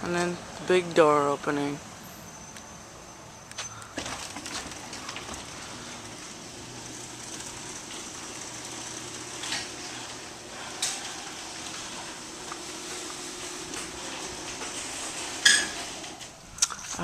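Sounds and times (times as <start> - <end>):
garage door opener motor hum: 3.8 - 16.4
garage door rattling: 3.9 - 17.0.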